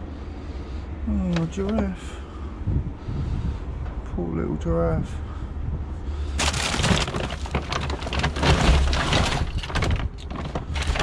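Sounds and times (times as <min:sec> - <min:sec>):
plastic toys clattering: 0:06.4 - 0:11.0.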